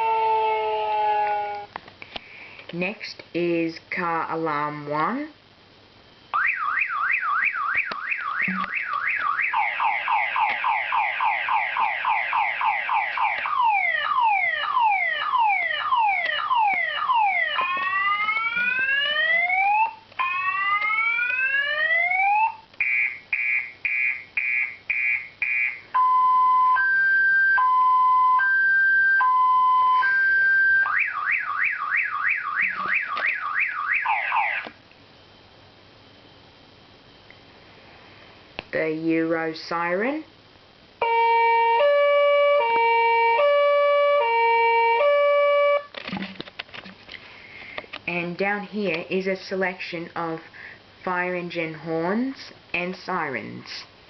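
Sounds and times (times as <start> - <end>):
car alarm cycling tones: 6.3 - 34.7, 41.0 - 45.9.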